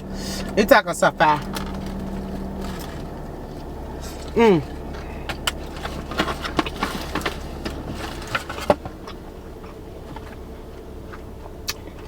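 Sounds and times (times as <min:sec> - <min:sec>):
steady low hum: 0:00.0 - 0:12.0
chewing food crackles: 0:01.4 - 0:12.0.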